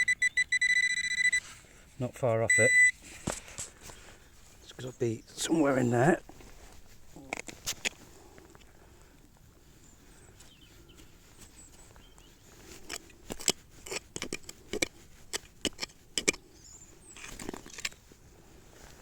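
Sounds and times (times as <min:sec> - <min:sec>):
digging tool scraping in soil: 0:05.5 - 0:08.1, 0:10.4 - 0:19.0.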